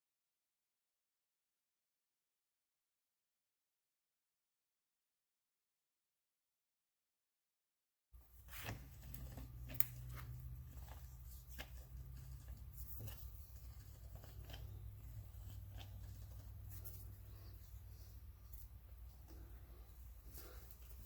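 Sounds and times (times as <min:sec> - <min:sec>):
low steady hum: 0:08.2 - 0:21.0
light clicks and taps of hand work: 0:08.6 - 0:17.2.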